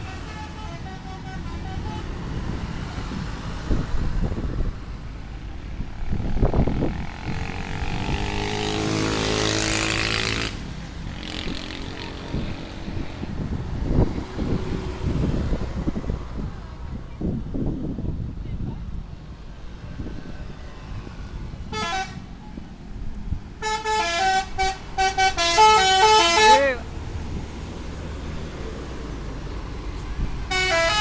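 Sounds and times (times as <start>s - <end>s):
bus horn notes: 0.0s - 2.2s, 21.7s - 22.3s, 23.6s - 26.8s, 30.5s - 31.0s
bus engine passing: 0.0s - 31.0s
road noise: 0.0s - 31.0s.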